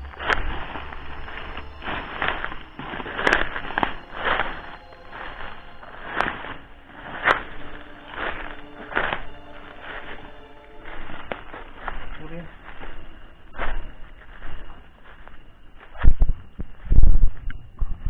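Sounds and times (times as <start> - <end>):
footsteps crunching on dry ground: 0.0 - 17.6.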